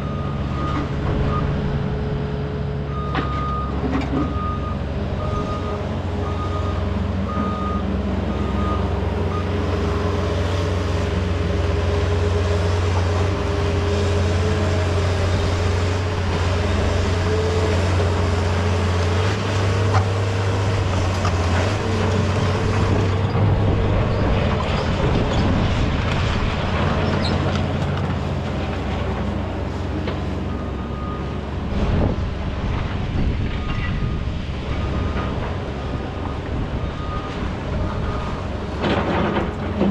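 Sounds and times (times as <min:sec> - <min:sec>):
heavy diesel equipment droning: 0:00.0 - 0:39.9
dense rattling and scraping: 0:20.0 - 0:29.3, 0:38.6 - 0:39.9.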